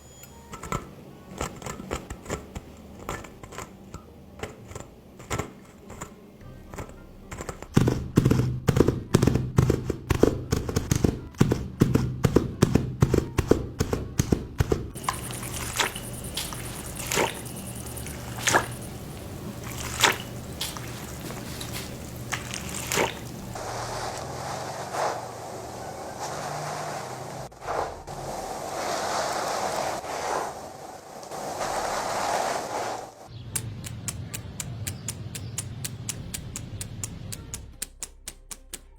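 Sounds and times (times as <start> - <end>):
thuds and knocks: 7.4 - 23.6
sharp clicks: 33.5 - 38.9.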